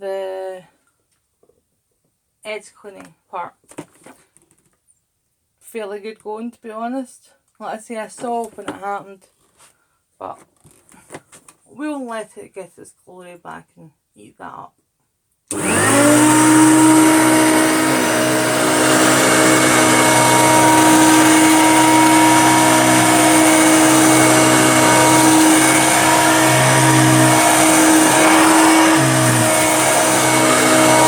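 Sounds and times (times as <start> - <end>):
vacuum cleaner whining hum: 15.5 - 31.0.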